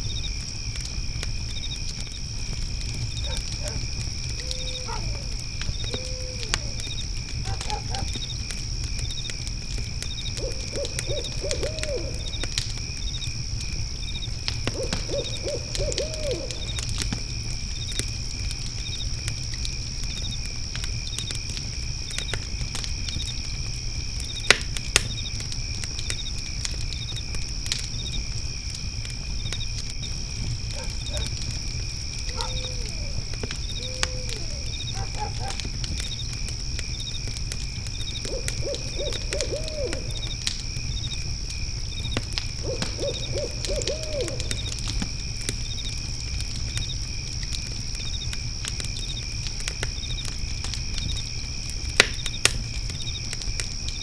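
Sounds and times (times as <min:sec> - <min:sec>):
crickets chirring: 0:00.0 - 0:54.0
fire pit crackling: 0:00.0 - 0:54.0
fire pops: 0:00.0 - 0:54.0
owl hooting: 0:04.4 - 0:06.9, 0:10.4 - 0:12.4, 0:14.7 - 0:16.8, 0:30.7 - 0:31.4, 0:32.2 - 0:35.6, 0:38.2 - 0:40.3, 0:42.6 - 0:44.8.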